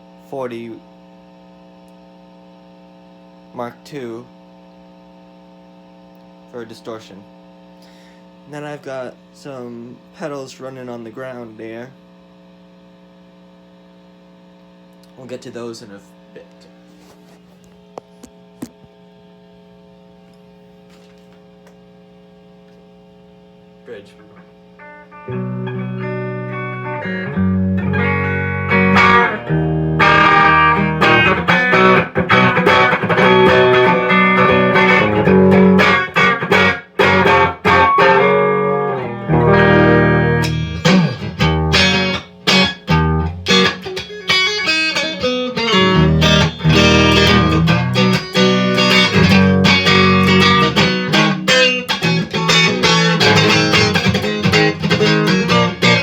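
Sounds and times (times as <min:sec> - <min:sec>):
clean electric guitar: 0:24.3 - 0:56.0.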